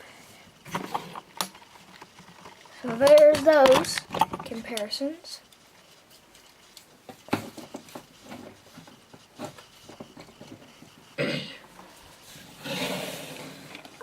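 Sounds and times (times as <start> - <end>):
plastic figures clicking: 1.1 - 5.7.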